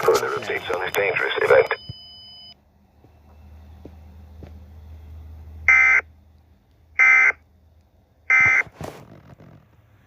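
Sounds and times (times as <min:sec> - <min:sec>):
low rumbling noise: 0:02.5 - 0:10.0.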